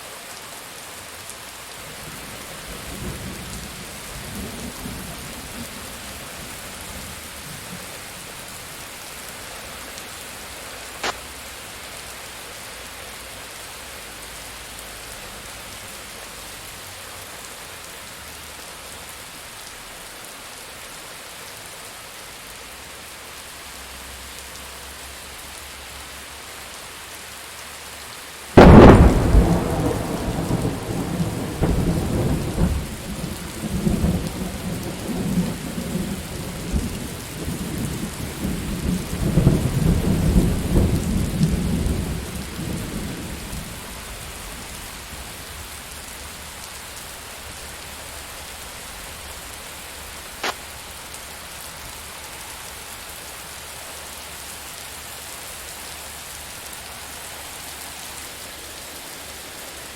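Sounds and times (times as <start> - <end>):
steady rain: 0.0 - 59.9
thunderclap and rolling thunder: 28.6 - 44.7.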